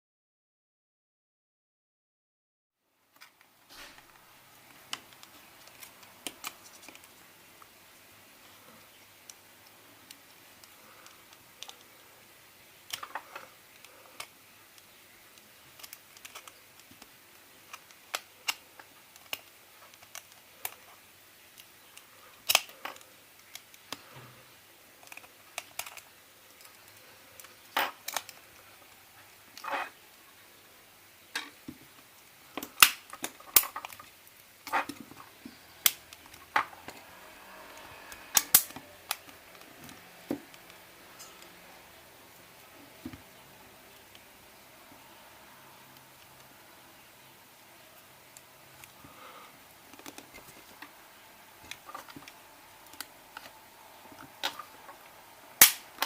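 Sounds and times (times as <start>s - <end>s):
small plastic parts clicking: 8.8s - 12.0s, 12.8s - 24.3s, 25.0s - 28.5s, 38.1s - 41.6s, 49.8s - 50.9s.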